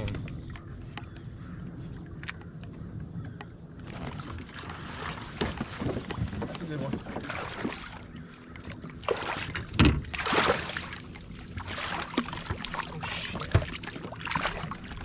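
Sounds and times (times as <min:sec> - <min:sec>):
water splashing: 0:03.8 - 0:15.0
knocks against a kayak: 0:09.7 - 0:10.1.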